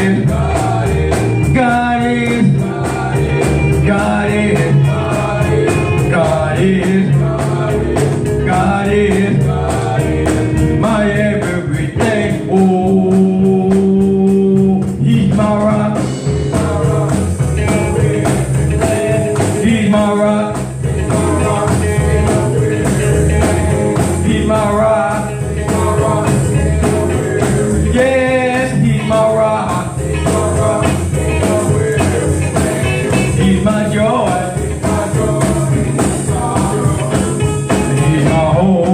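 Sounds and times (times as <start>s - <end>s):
bass: 0.0s - 38.9s
drums: 0.0s - 38.9s
gospel singing: 0.0s - 38.9s
keyboards: 0.0s - 38.9s.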